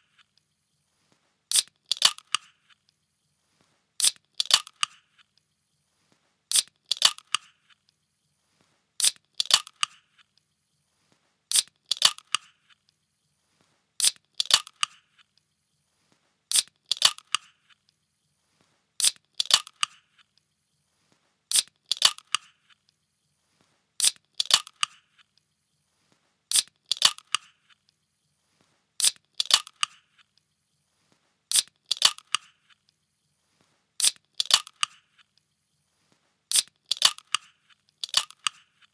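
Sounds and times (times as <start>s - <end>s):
can being opened: 1.5s - 2.4s, 6.5s - 7.4s, 11.5s - 12.4s, 16.5s - 17.4s, 21.5s - 22.4s, 26.5s - 27.4s, 31.5s - 32.5s, 36.5s - 37.4s, 38.0s - 38.6s.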